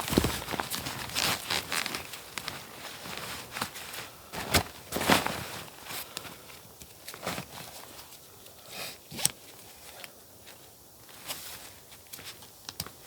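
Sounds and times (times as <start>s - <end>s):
rustling and scuffing: 0.0s - 8.3s.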